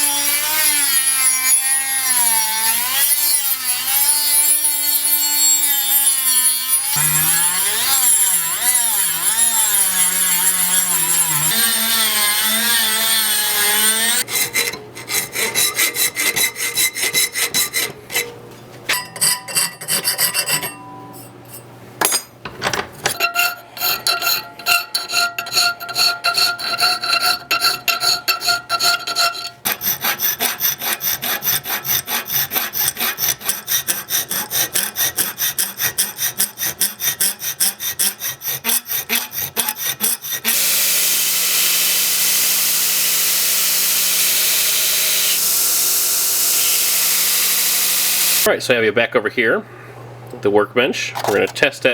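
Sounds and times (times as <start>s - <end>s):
power tool whining on metal: 0.0s - 14.8s, 38.7s - 48.5s
rhythmic scraping strokes: 5.3s - 18.4s.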